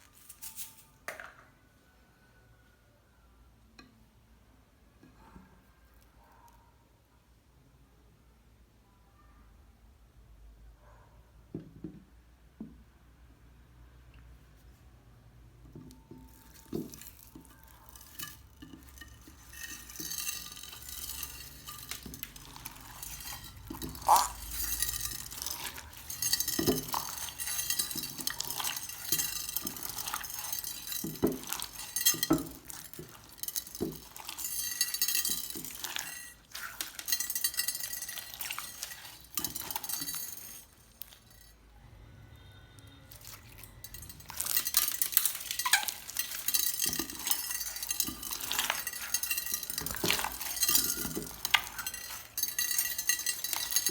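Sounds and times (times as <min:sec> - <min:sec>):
plastic toys clinking: 0:00.0 - 0:01.4, 0:15.9 - 0:41.6, 0:43.1 - 0:53.9
slime crackling: 0:28.3 - 0:31.9.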